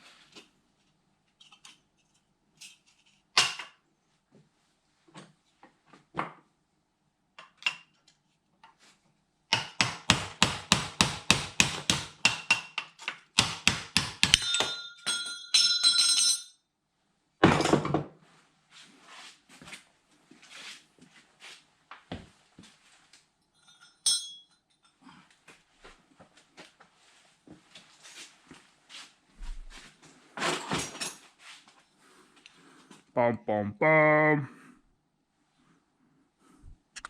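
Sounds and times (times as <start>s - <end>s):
hammer striking metal: 13.4s - 15.4s.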